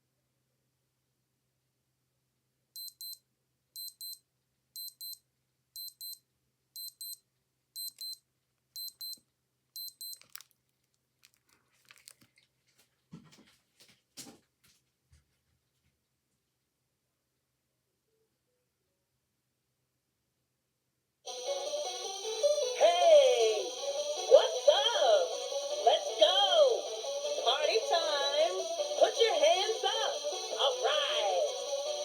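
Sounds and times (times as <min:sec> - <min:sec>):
digital watch alarm beeping: 0:02.8 - 0:03.2, 0:03.8 - 0:04.2, 0:04.8 - 0:05.2, 0:05.8 - 0:06.2, 0:06.8 - 0:07.2, 0:07.8 - 0:08.2, 0:08.8 - 0:09.2, 0:09.8 - 0:10.2
handling clicks and rustling: 0:10.0 - 0:12.5.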